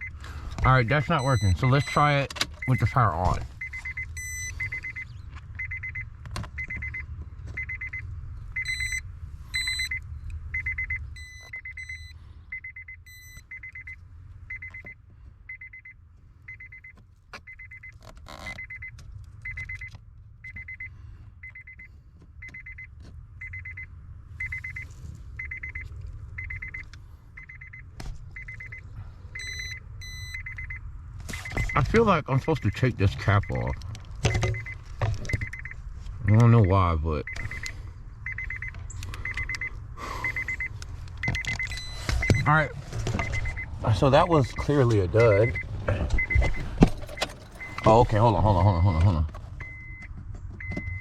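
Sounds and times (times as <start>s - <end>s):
car warning chime: 0.0s - 51.0s
handling clicks and knocks: 46.2s - 48.0s.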